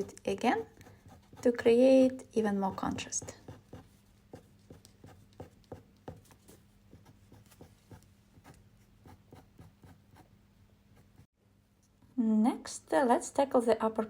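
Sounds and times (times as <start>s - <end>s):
pen scratching on paper: 0.6s - 1.7s, 2.6s - 10.3s.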